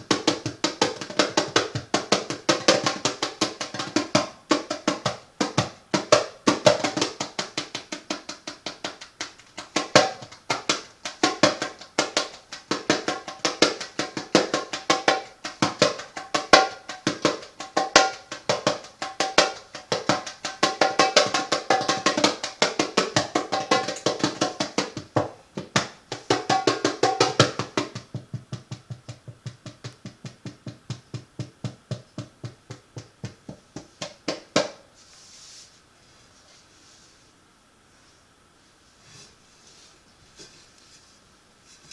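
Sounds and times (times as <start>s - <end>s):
hand drum playing: 0.0s - 34.8s.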